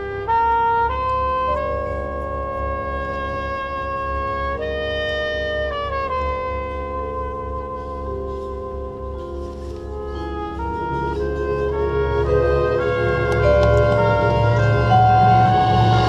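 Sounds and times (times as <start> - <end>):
marching band winds chords: 0.0 - 16.0.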